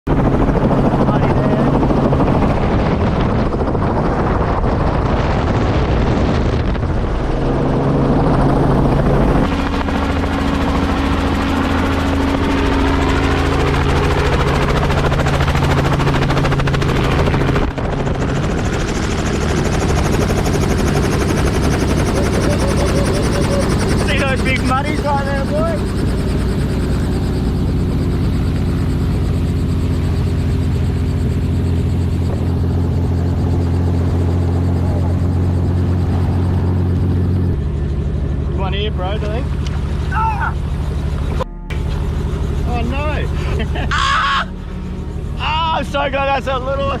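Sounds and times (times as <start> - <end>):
helicopter rotor and engine: 0.1 - 47.0.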